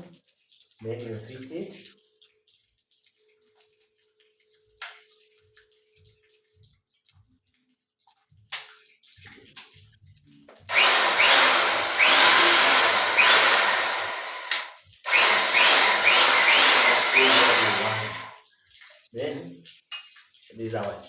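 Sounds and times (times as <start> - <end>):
electric rotary hammer running: 10.7 - 18.4.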